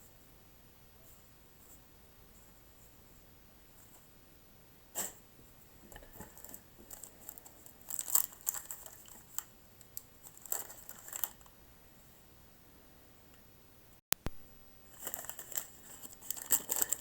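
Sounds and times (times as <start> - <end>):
cards and paper rustling: 14.9 - 17.0.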